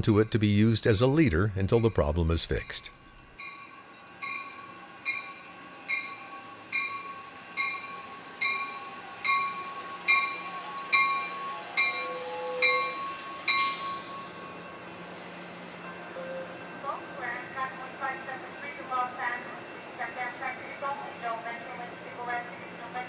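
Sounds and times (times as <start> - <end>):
crossing signal bell ringing: 1.6 - 14.8.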